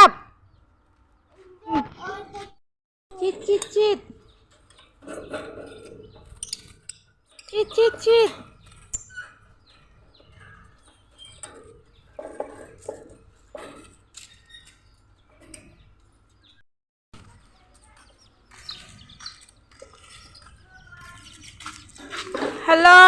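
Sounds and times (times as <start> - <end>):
chicks peeping: 17.2 - 22.2.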